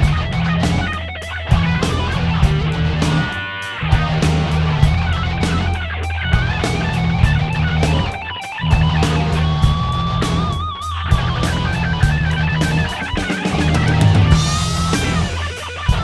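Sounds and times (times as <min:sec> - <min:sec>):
rock music: 0:00.0 - 0:16.0
wavering lead guitar: 0:00.0 - 0:16.0.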